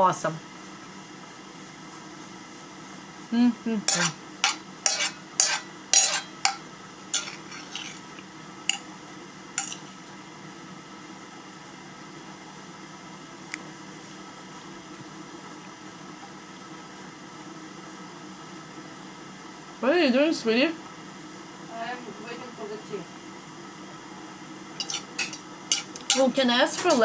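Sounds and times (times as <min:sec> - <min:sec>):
cutlery clinking on a plate: 0:03.9 - 0:06.6, 0:07.2 - 0:08.0, 0:09.6 - 0:09.8, 0:24.8 - 0:27.0.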